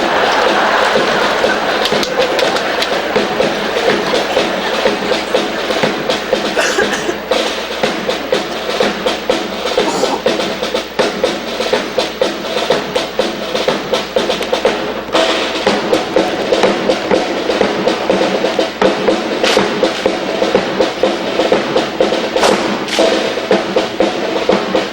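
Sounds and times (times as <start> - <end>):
rifle drill clacks and slaps: 1.8 - 3.2.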